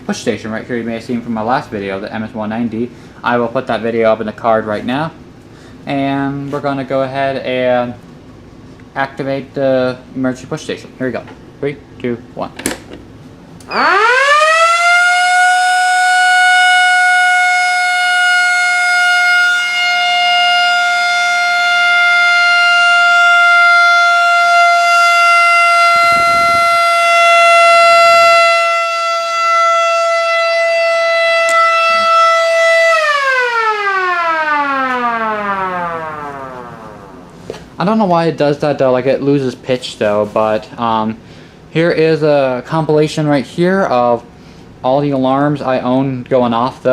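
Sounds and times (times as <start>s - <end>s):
fire alarm siren wailing: 13.7s - 37.3s.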